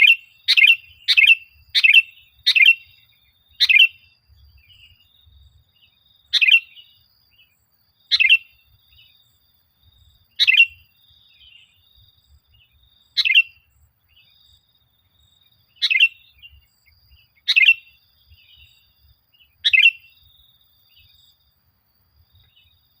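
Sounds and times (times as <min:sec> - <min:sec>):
soft bird chatter: 0:00.0 - 0:23.0.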